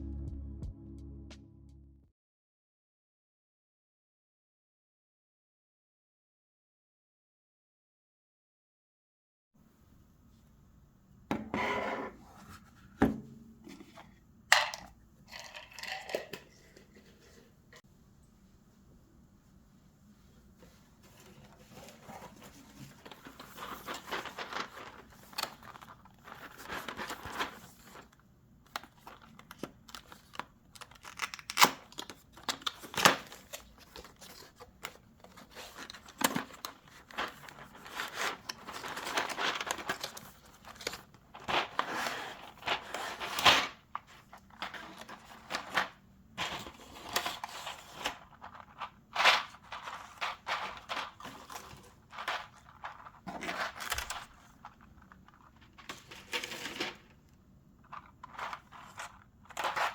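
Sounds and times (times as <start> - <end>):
packaging crinkling and tearing: 22.2 - 57.1.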